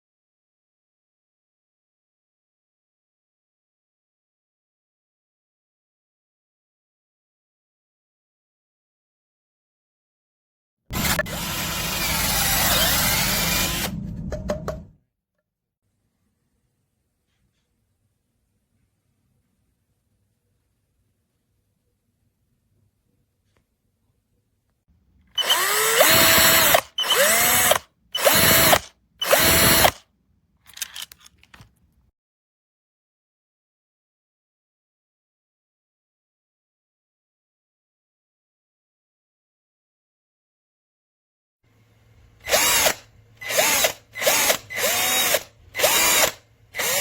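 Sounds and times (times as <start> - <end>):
cordless drill whining: 10.9 - 14.0, 25.4 - 30.0, 42.4 - 47.0.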